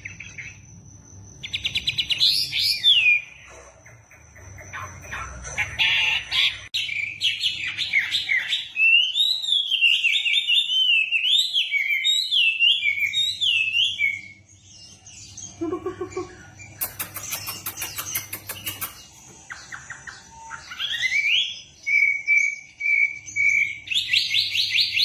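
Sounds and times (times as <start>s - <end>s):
bird singing whistled phrases: 5.8s - 14.4s, 19.5s - 25.0s.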